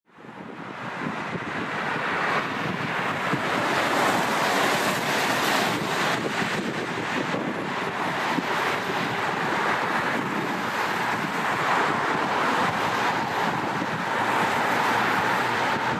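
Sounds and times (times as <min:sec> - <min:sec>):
jet engines roaring: 0:00.4 - 0:15.9.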